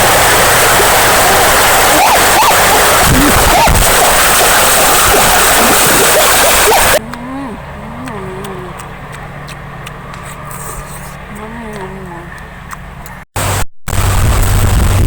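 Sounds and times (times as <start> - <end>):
river water rushing: 0.0 - 7.0
person speaking: 7.0 - 9.0, 10.3 - 12.4.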